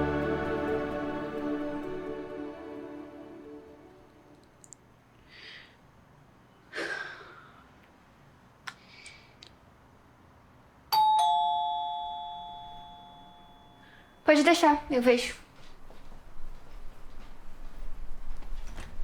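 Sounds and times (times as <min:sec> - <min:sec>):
electronic doorbell chime: 0:11.0 - 0:14.2.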